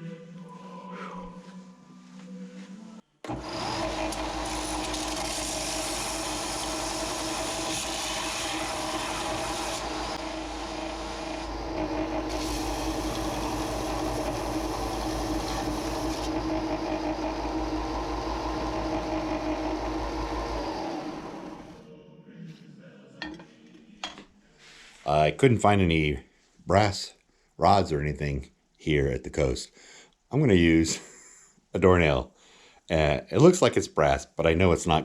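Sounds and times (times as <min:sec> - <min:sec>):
power tool running: 0:03.2 - 0:21.8.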